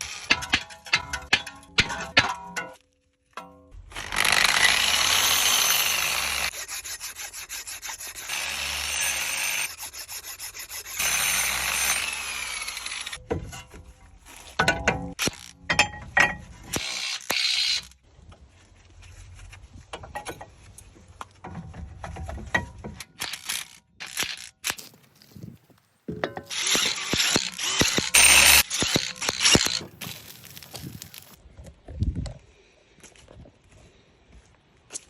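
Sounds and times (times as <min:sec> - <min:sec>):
power tool whining: 0:03.9 - 0:06.6, 0:26.1 - 0:31.4
ratchet clicking: 0:23.2 - 0:24.9, 0:26.1 - 0:31.4.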